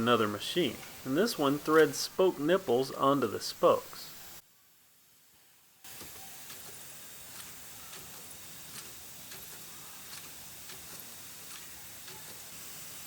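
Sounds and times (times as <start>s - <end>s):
steady factory hiss: 0.0s - 13.0s
machine sharp clicks: 5.9s - 12.8s.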